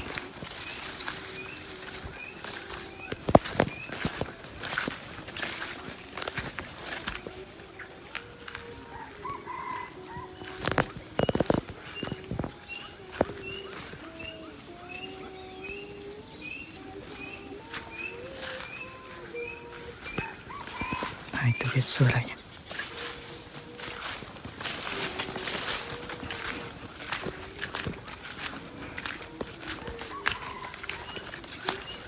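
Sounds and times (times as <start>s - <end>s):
insects whining: 0.0s - 32.0s
junglefowl calling: 7.7s - 32.0s.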